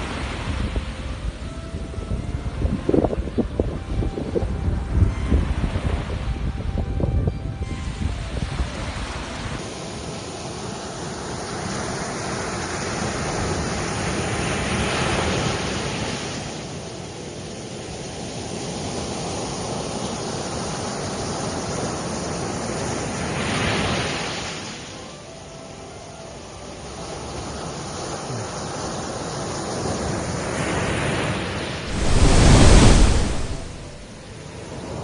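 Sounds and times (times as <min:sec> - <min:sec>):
sea waves washing onto shore: 0:08.2 - 0:25.2, 0:26.3 - 0:35.0
waves breaking: 0:27.3 - 0:35.0.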